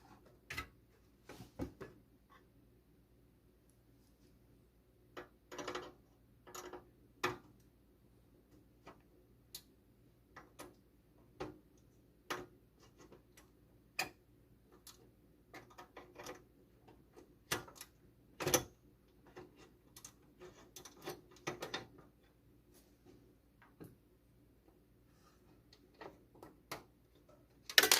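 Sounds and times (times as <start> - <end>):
computer parts clicking and tapping: 25.7 - 27.9.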